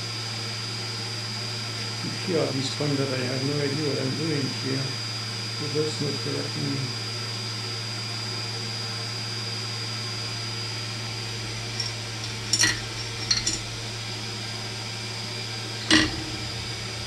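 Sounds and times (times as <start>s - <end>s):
fume extractor fan humming: 9.8s - 17.0s.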